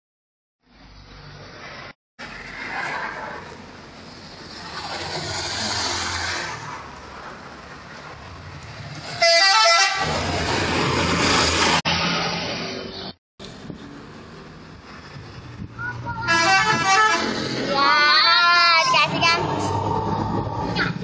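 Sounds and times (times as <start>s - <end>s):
bus engine and road noise: 0.6s - 21.0s
multi-tone bus horn: 9.1s - 10.3s, 16.2s - 18.9s.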